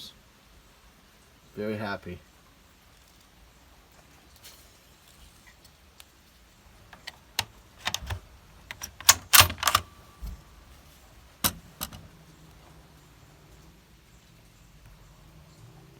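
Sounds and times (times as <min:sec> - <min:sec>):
rifle metallic clicks and clacks: 0:07.0 - 0:10.4, 0:11.4 - 0:12.1.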